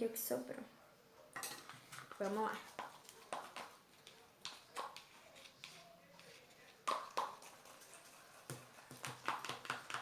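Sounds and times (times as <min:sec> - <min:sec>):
handling utensils and containers: 0:01.4 - 0:04.2.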